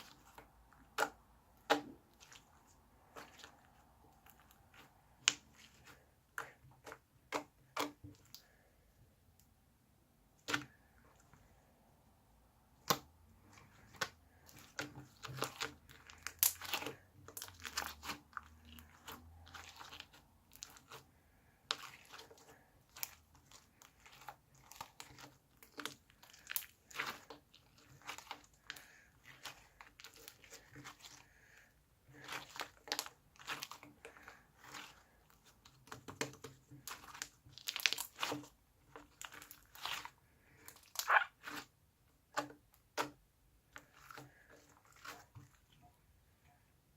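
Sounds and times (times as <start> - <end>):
bead slime crunching and popping: 13.8 - 21.0, 36.8 - 41.7.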